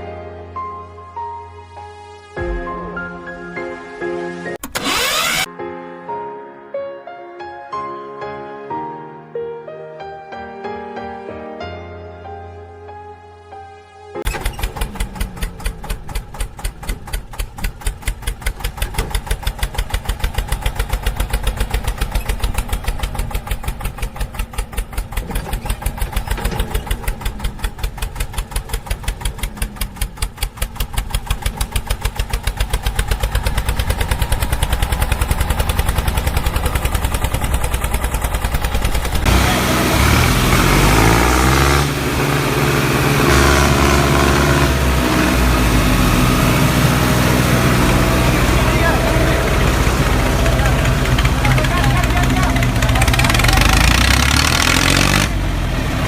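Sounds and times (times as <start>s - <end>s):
louder engine with shifting pitch: 4.6s - 5.5s, 14.3s - 56.0s
engine chugging: 14.2s - 56.0s.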